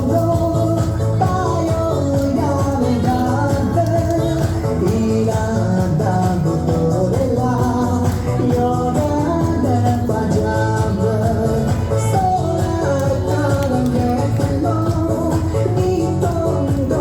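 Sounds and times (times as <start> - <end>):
instrumental backing: 0.0 - 17.0
steady bass: 0.0 - 17.0.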